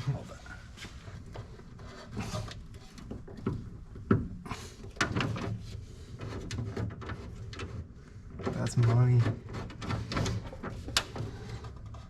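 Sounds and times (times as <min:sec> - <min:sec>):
rustling and shuffling: 0:00.0 - 0:12.0
sharp knocks and clicks: 0:02.7 - 0:12.0.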